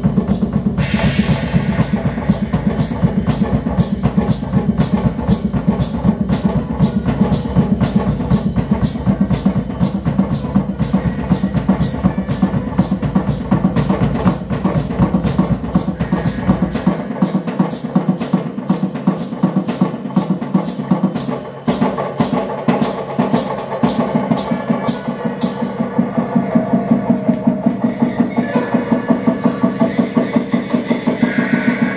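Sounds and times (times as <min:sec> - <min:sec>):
live music: 0:00.0 - 0:31.9.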